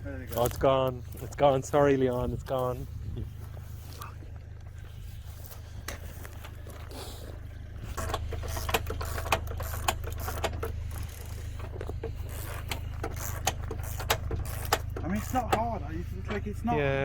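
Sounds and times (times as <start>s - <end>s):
sharp clicks and knocks: 7.8s - 15.7s.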